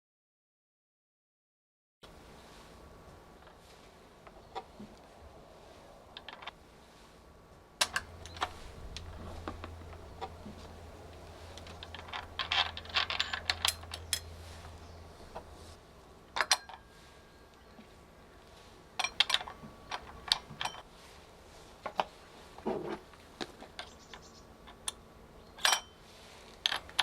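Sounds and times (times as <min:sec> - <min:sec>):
clicks and knocks of tool parts: 0:07.8 - 0:15.6, 0:19.0 - 0:20.8, 0:26.6 - 0:27.0
low hum: 0:07.8 - 0:15.8.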